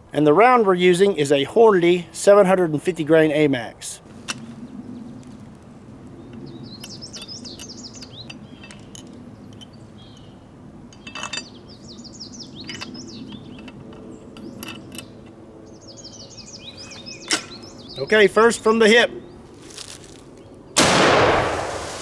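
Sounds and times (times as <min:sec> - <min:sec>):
songbirds chirping: 0:00.0 - 0:21.9
light metallic rattles: 0:10.9 - 0:11.6
steady low hum: 0:20.8 - 0:22.0.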